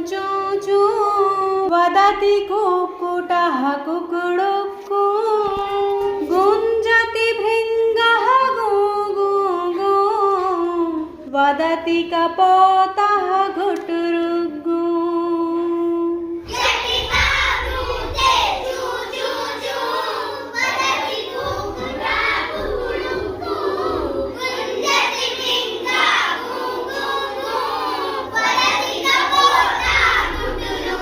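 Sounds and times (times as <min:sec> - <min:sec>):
children singing together: 0:05.2 - 0:11.3, 0:16.3 - 0:31.0.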